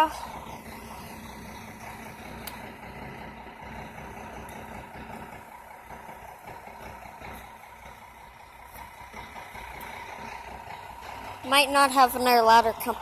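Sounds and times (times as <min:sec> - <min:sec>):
diesel engines idling: 0:00.0 - 0:13.0.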